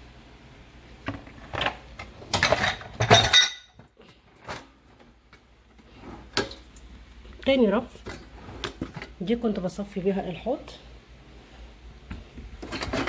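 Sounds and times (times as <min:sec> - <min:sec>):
dishes and utensils clattering: 0:01.5 - 0:04.7, 0:12.6 - 0:13.0.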